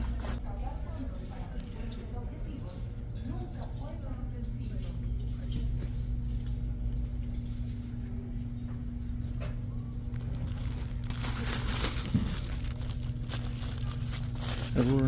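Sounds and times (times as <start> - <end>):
low electrical hum: 0.0 - 15.0
rumble: 6.2 - 14.7
rustling: 10.1 - 15.0.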